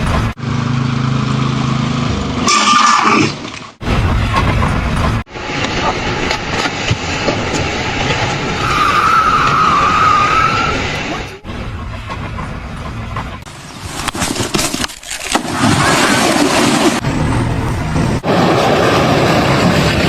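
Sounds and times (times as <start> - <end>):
noisy machinery: 3.8 - 14.7, 15.6 - 20.0
steady high squeal: 7.6 - 11.5.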